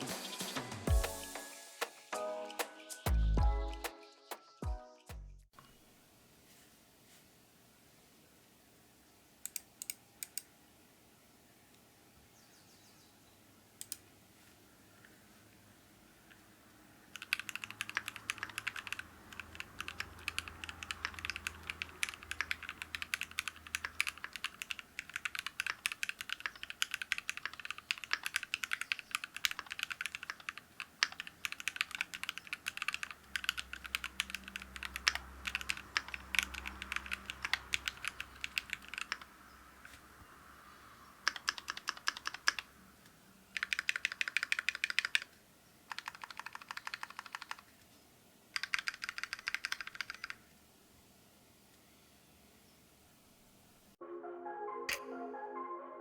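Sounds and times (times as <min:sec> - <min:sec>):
typing on mechanical keyboard: 0:17.1 - 0:39.3, 0:41.2 - 0:42.7, 0:43.6 - 0:47.7, 0:48.6 - 0:50.4.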